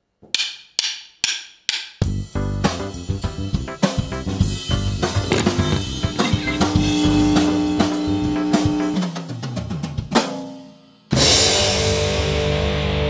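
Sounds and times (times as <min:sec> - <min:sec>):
drum kit beat: 0:00.4 - 0:11.7
guitar: 0:04.0 - 0:09.0, 0:11.2 - 0:13.0
distorted electric guitar chord: 0:05.2 - 0:09.0.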